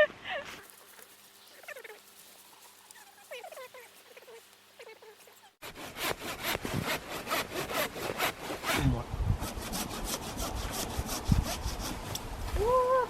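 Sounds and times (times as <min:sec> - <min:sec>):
hand saw cutting wood: 0:05.6 - 0:12.3.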